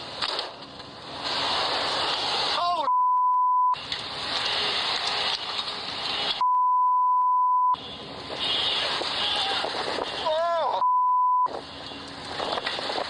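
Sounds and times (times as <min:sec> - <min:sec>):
censor bleep: 0:02.9 - 0:03.8, 0:06.4 - 0:07.8, 0:10.8 - 0:11.5
rushing storm wind: 0:08.2 - 0:10.6, 0:11.5 - 0:13.0.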